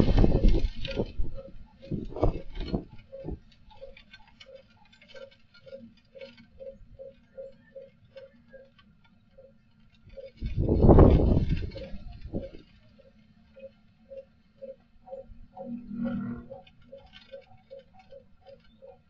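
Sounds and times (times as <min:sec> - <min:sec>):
wind gusting against microphone: 0:00.0 - 0:03.4, 0:10.1 - 0:12.8.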